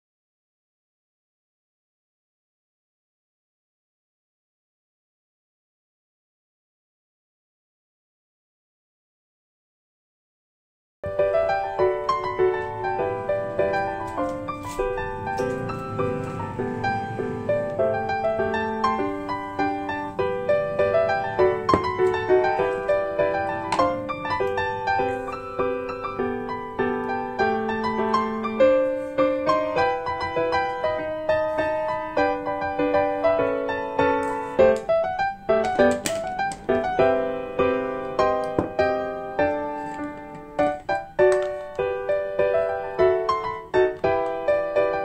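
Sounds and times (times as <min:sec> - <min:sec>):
gentle piano melody: 0:11.0 - 0:45.0.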